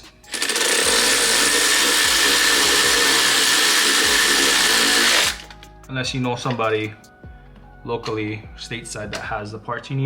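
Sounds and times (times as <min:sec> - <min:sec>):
power tool whining: 0:00.0 - 0:05.6.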